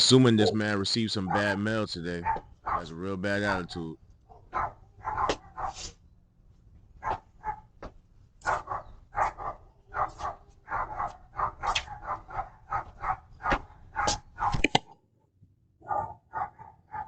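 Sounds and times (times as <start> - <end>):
dog barking: 1.2 - 1.6, 2.2 - 3.0, 4.3 - 6.0, 7.0 - 7.7, 8.4 - 14.6, 15.8 - 17.0.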